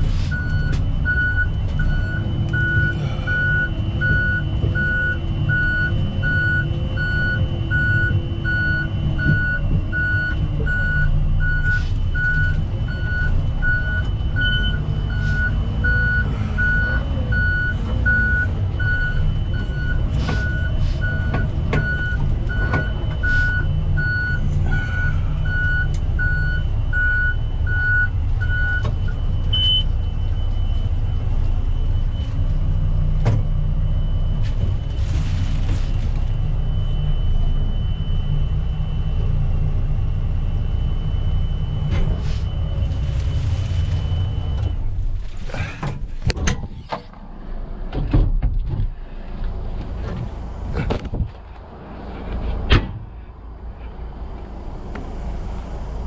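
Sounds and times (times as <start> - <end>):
diesel engine running: 0.0 - 56.0
reverse alarm beeping: 0.2 - 44.9.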